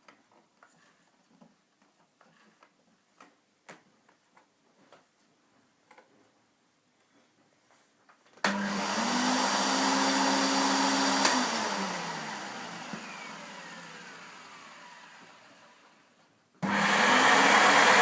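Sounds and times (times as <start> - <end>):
vacuum cleaner motor whine: 8.4 - 18.0
vacuum cleaner switch click: 11.1 - 11.5.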